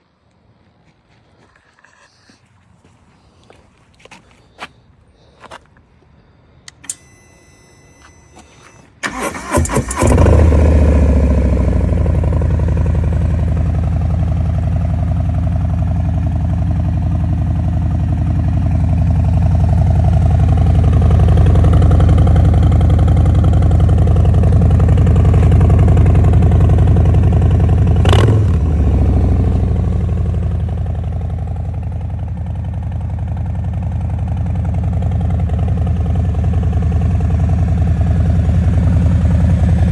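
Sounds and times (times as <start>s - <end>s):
motorcycle engine starting: 6.7s - 39.9s
motorcycle engine idling loudly: 10.2s - 39.9s.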